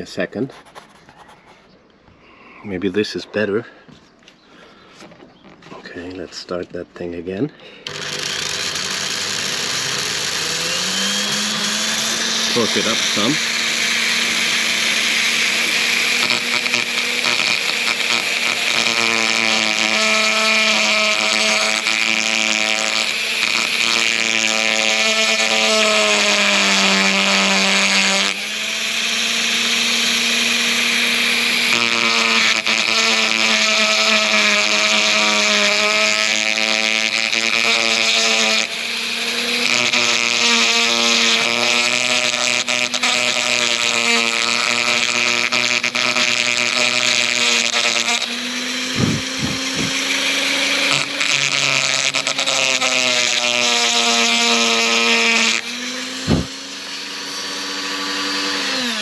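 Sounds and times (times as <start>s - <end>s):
rotary tool grinding rust: 7.7s - 59.0s.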